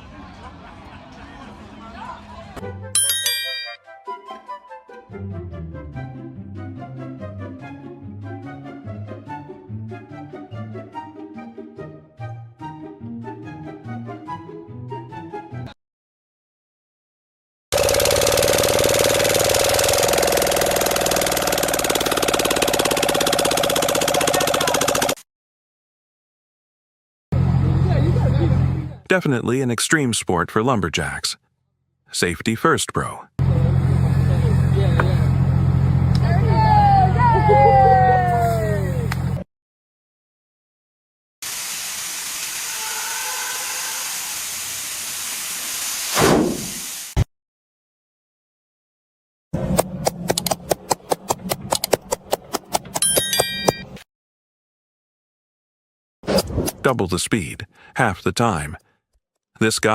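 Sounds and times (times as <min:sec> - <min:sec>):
steady hiss: 0:41.4 - 0:46.1.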